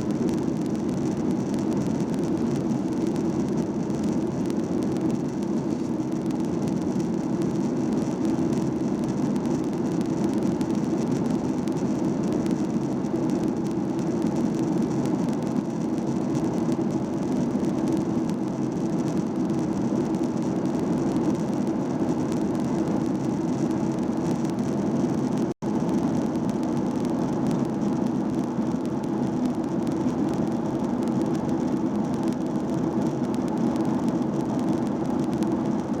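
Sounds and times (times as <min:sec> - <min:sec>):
jet engines droning in cabin: 0:00.0 - 0:36.0.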